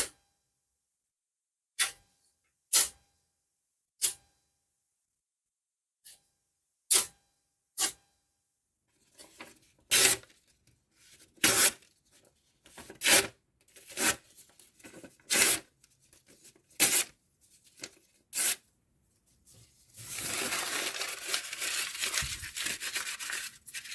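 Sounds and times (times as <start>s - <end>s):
paper rustling: 9.1s - 18.6s, 19.3s - 23.9s
paper tearing: 9.4s - 10.4s, 11.4s - 11.9s, 12.8s - 18.6s, 19.9s - 23.9s.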